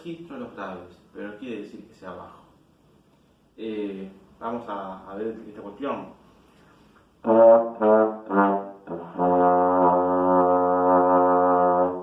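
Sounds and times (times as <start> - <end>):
trombone playing low notes: 7.2 - 12.0.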